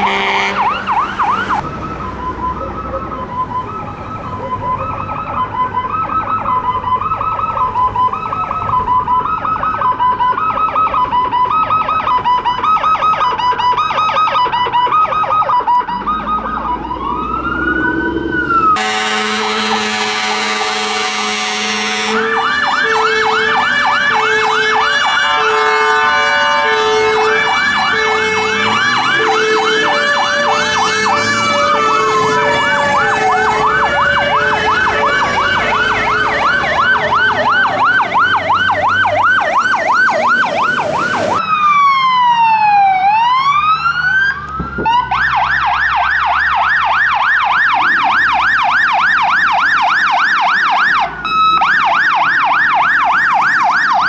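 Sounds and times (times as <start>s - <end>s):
fire engine sirens: 0.0s - 54.0s
low pulsing tone: 16.6s - 18.8s.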